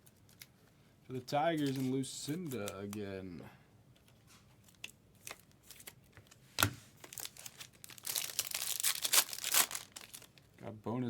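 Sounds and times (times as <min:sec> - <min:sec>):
wrapper being torn open: 0:01.6 - 0:03.0, 0:07.0 - 0:10.4
wrapper crinkling: 0:01.6 - 0:03.0, 0:04.6 - 0:06.3, 0:07.0 - 0:10.5.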